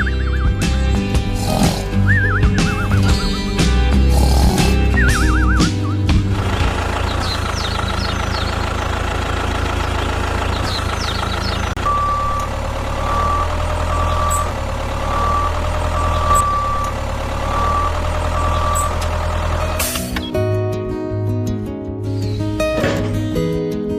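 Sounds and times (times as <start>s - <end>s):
truck engine running: 0.0s - 20.3s
reversing beeper: 11.3s - 19.2s.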